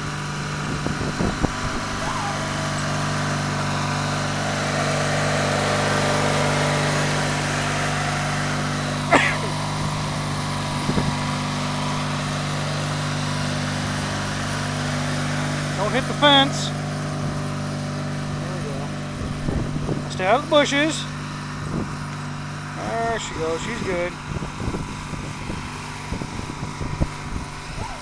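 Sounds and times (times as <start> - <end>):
riding mower engine running: 0.0 - 28.0.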